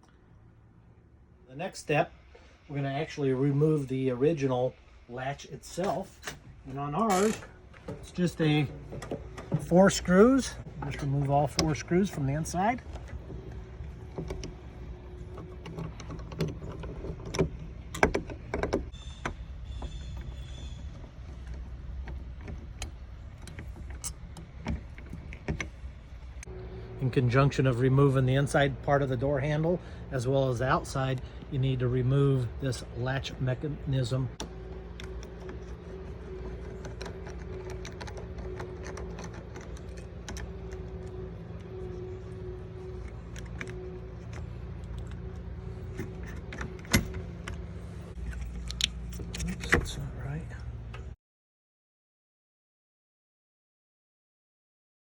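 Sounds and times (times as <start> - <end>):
clicks and knocks of screws: 34.4 - 41.7.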